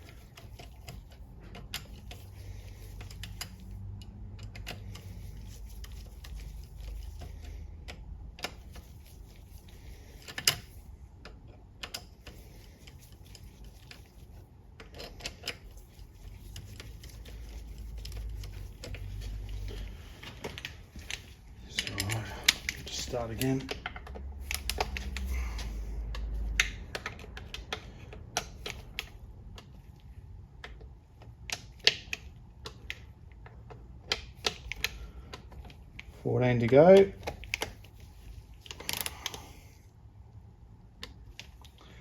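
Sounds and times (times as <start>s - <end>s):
hand ratchet clicking: 14.8s - 29.7s
sharp metal clicks: 16.5s - 29.7s.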